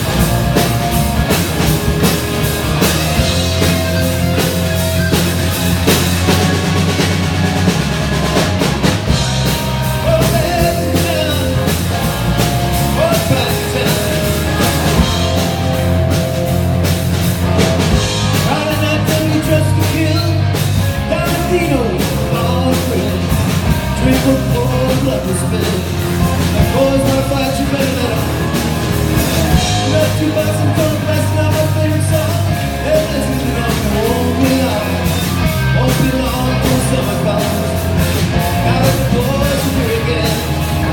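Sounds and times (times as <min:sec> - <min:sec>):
drum kit beat: 0:00.0 - 0:40.9
rock band playing: 0:00.0 - 0:40.9
person singing: 0:09.1 - 0:16.6, 0:18.3 - 0:40.9.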